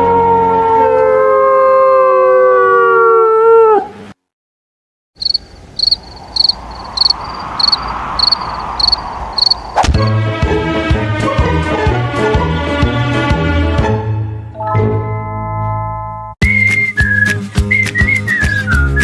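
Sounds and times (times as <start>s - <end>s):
steady high ticking: 5.2s - 9.6s.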